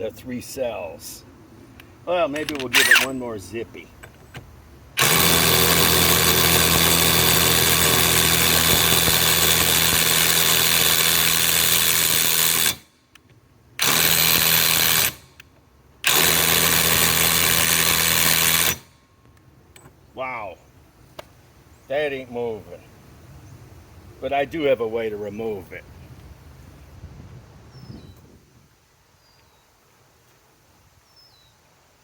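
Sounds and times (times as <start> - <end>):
impact wrench hammering on nut: 5.0 - 12.8, 13.8 - 15.3, 16.1 - 18.9.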